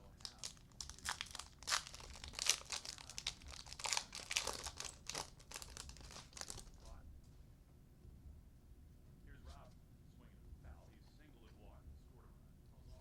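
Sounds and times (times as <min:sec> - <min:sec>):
plastic wrappers crinkling: 0:00.0 - 0:06.9.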